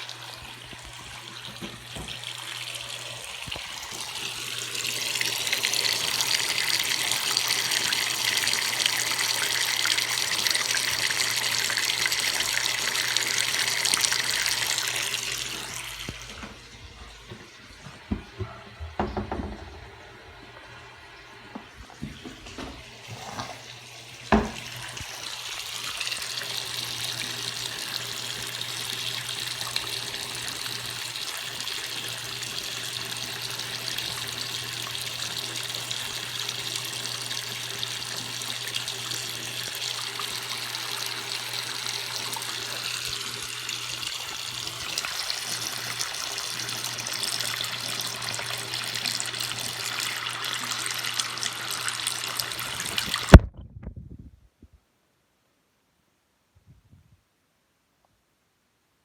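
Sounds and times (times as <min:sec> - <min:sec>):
tap water running into sink: 0:00.0 - 0:53.6.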